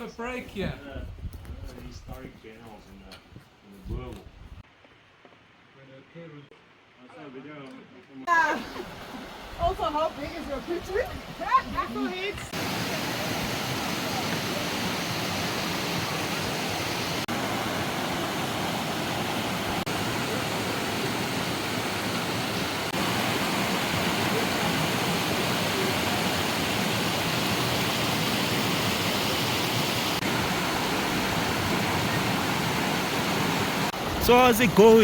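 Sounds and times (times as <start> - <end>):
waterfall rushing: 8.5 - 35.0.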